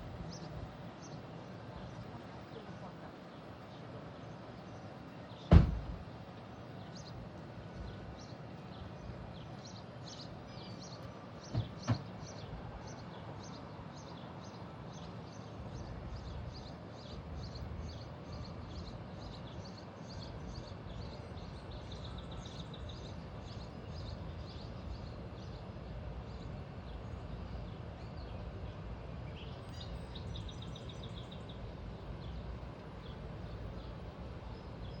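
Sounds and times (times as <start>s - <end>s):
outdoor background noise: 0.0s - 35.0s
sharp knocks: 5.5s - 6.0s, 11.5s - 12.1s.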